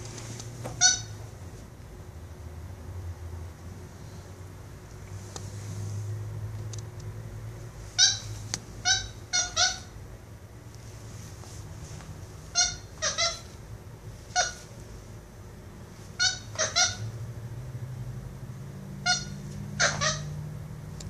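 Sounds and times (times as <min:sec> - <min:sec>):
monkey squeaking calls: 0:00.8 - 0:01.2, 0:08.0 - 0:09.9, 0:12.5 - 0:13.5, 0:14.3 - 0:14.7, 0:16.2 - 0:17.1, 0:19.0 - 0:20.4.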